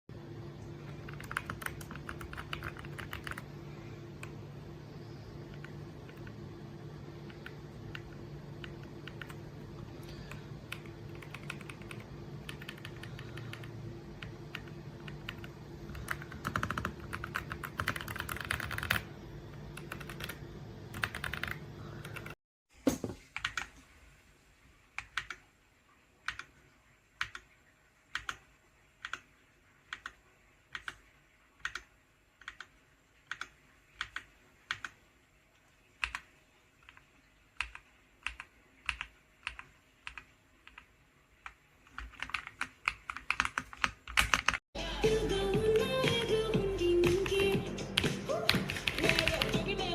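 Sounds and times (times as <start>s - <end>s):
steady low hum: 0.1s - 22.4s
mechanical keyboard typing: 0.9s - 3.5s, 5.5s - 6.4s, 7.2s - 9.5s, 10.1s - 22.4s, 25.0s - 25.4s, 26.3s - 26.5s, 27.2s - 27.5s, 28.1s - 29.3s, 29.9s - 31.0s, 31.6s - 35.0s, 36.0s - 44.6s, 47.2s - 49.8s.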